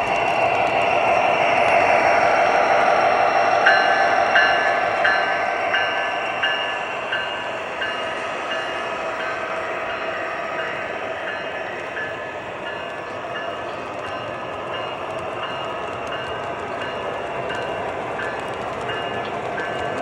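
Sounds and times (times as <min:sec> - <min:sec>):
train rolling by: 0:00.0 - 0:20.0.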